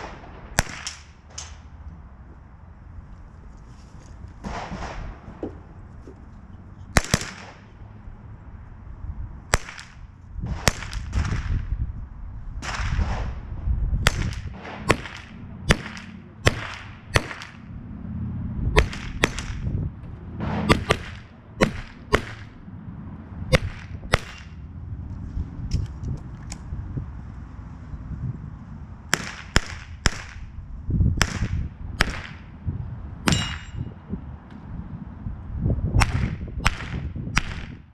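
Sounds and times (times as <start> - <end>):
rifle shots cracking: 0.0 - 1.6, 4.4 - 5.3, 6.9 - 7.7, 9.5 - 10.0, 14.0 - 17.6, 18.8 - 19.6, 20.4 - 22.6, 23.5 - 24.6.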